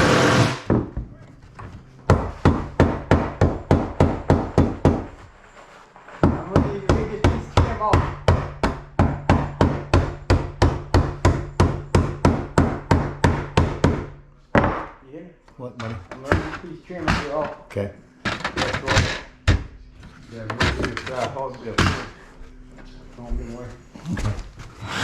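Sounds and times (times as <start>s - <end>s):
hammer blows: 0.0s - 0.8s.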